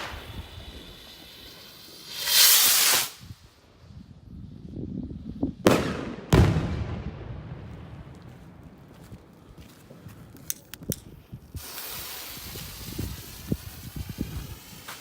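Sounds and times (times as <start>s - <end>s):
firework bangs: 0.0s - 3.4s, 5.6s - 8.1s
firework rushing burst: 0.0s - 3.6s, 11.5s - 15.0s.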